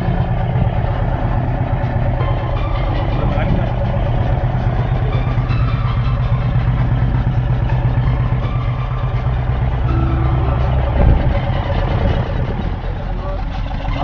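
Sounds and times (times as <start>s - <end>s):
boat engine droning: 0.0s - 14.0s.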